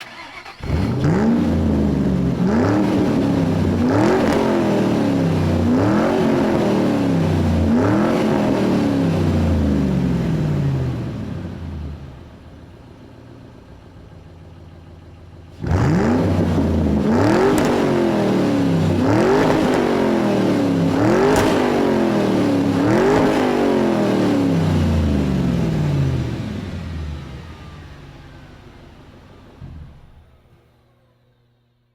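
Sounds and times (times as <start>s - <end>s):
engine revving: 0.0s - 12.2s, 15.5s - 30.5s
engine idling: 9.2s - 17.2s.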